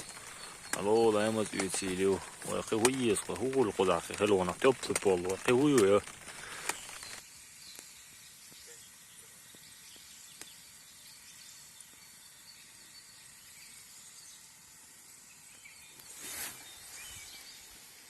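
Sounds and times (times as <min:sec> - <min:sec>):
faint even hiss: 0:00.0 - 0:18.0.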